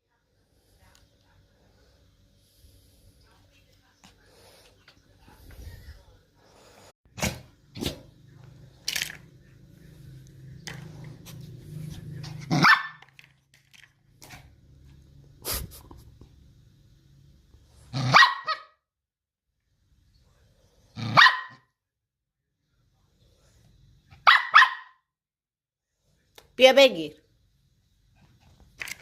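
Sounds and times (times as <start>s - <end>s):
small dog barking: 12.4s - 13.0s, 17.9s - 18.8s, 21.0s - 21.7s, 24.2s - 25.0s.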